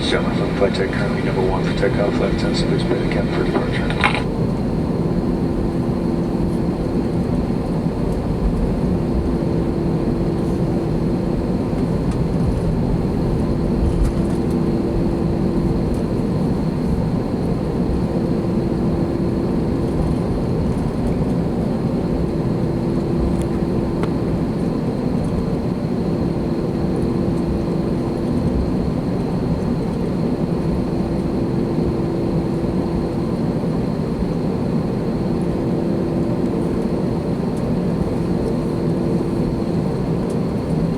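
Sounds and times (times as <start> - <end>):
low hum: 0.0 - 4.3
airplane cabin engine drone: 0.0 - 40.9.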